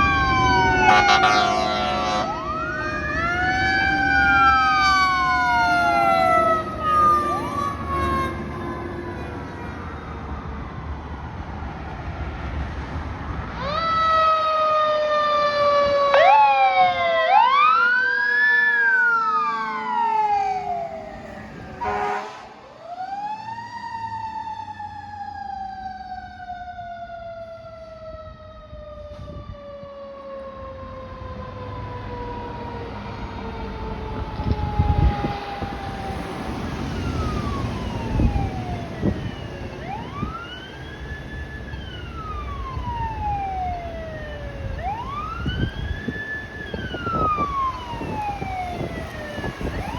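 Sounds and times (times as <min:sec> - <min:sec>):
siren falling in pitch: 0:00.0 - 0:10.1, 0:13.6 - 0:49.9
electronic siren wail: 0:00.0 - 0:11.4, 0:13.6 - 0:49.9
fire truck horn blast: 0:00.8 - 0:02.6, 0:04.3 - 0:09.9, 0:21.6 - 0:22.8.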